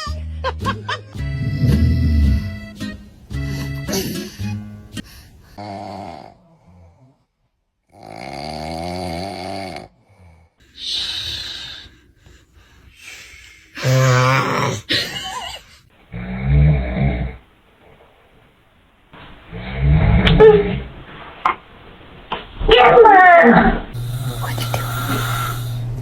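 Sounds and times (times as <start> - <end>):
man snoring: 1.2 - 2.7, 5.6 - 7.1, 7.9 - 11.9, 13.8 - 14.9, 24.0 - 26.0.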